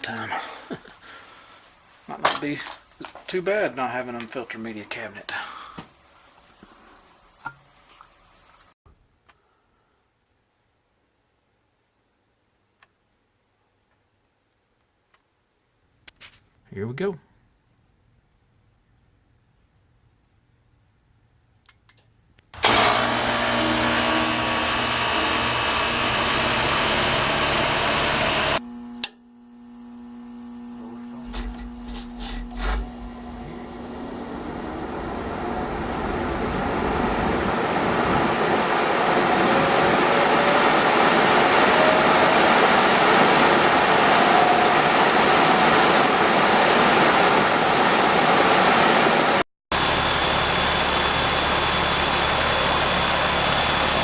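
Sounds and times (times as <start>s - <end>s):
machine with thin high whine: 22.6s - 48.0s, 49.7s - 54.0s
steady running noise: 22.6s - 48.3s, 49.7s - 54.0s
blower motor rushing air: 22.6s - 54.0s
low hum: 23.2s - 44.0s, 49.7s - 54.0s.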